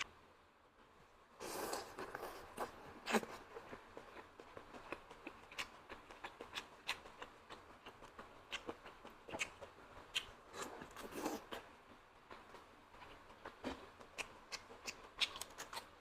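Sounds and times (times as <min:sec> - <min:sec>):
mouth chewing wet smacks: 0:01.6 - 0:10.4.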